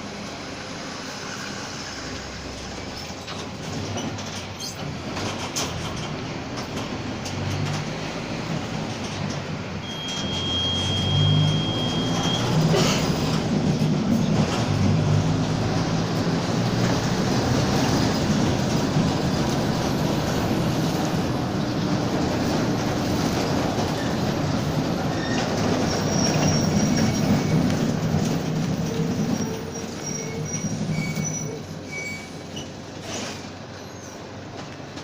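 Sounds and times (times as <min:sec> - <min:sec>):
bus diesel engine under load: 0:00.0 - 0:35.0
road rumble: 0:00.0 - 0:35.0
bus body rattle: 0:02.7 - 0:35.0.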